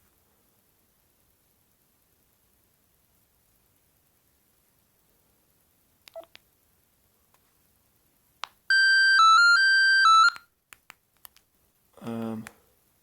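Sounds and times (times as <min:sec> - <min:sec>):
electronic ringtone melody: 0:08.7 - 0:10.4.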